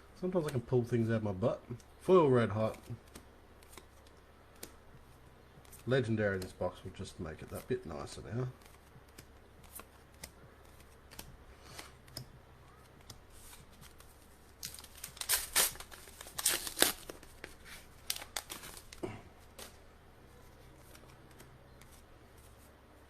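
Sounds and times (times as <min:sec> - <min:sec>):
cards clicking and rustling: 0:02.5 - 0:04.8, 0:07.3 - 0:19.8, 0:20.4 - 0:22.7
wrapper being torn open: 0:14.6 - 0:19.0.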